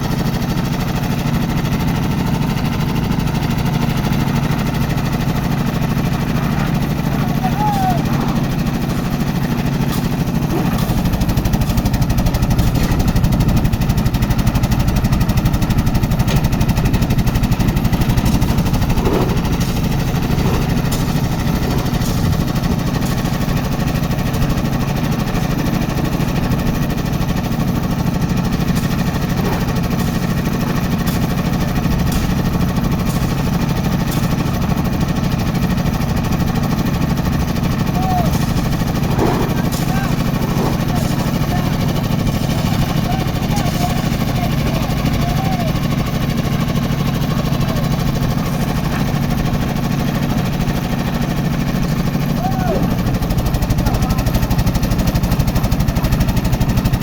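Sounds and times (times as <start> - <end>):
machine engine chugging: 0.0 - 57.0.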